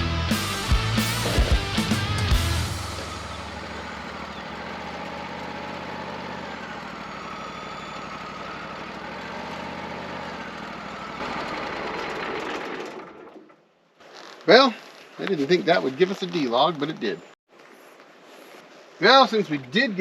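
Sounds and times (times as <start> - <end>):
sawmill engine hum: 0.0 - 13.5.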